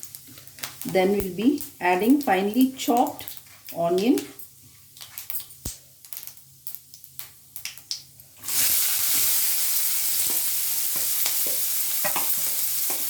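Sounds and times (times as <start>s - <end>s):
onion sizzling in hot oil: 0.0s - 13.0s
spoon stirring in pan: 10.3s - 13.0s.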